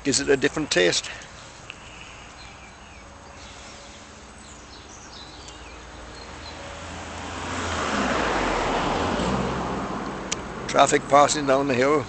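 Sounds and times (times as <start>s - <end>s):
vehicle passing on road: 0.0s - 12.0s.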